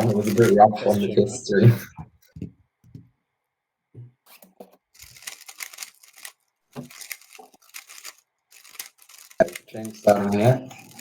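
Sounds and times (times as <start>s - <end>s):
plastic puzzle cube clicking: 5.0s - 11.0s.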